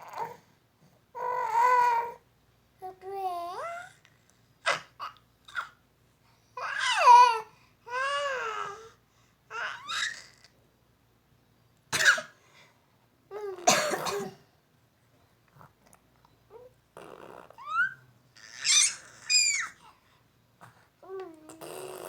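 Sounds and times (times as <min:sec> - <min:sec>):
baby babbling: 0:01.2 - 0:02.2, 0:04.7 - 0:05.8, 0:06.6 - 0:10.5, 0:16.5 - 0:19.9, 0:21.0 - 0:22.0
woman coughing: 0:12.0 - 0:12.4, 0:13.6 - 0:14.5.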